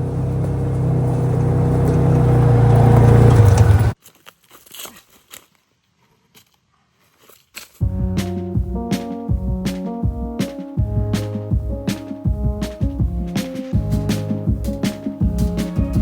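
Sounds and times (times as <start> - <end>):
car engine and road noise: 0.0 - 4.0
faint crunches: 4.0 - 7.9
music: 7.8 - 16.0.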